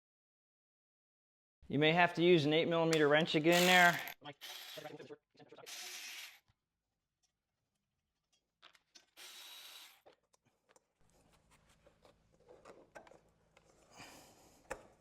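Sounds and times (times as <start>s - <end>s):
wrench clicking on metal: 3.5s - 4.9s.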